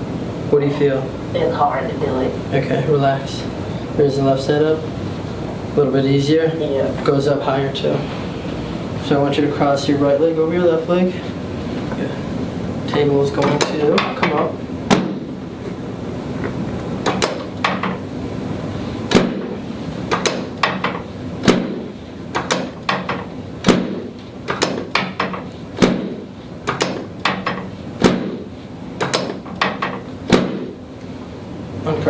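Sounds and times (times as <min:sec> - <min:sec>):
steady low hum: 0:00.0 - 0:32.0
adjusting table knocks: 0:16.4 - 0:18.0, 0:20.1 - 0:28.4, 0:29.0 - 0:30.7.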